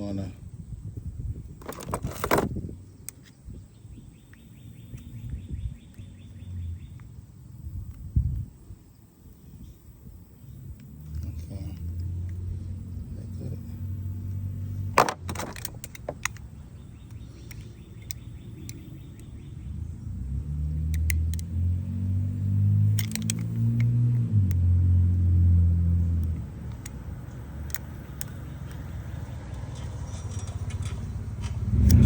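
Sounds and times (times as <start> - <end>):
vehicle engine running: 10.4 - 32.0
hand tools clicking and rattling: 15.0 - 16.5, 29.7 - 32.0.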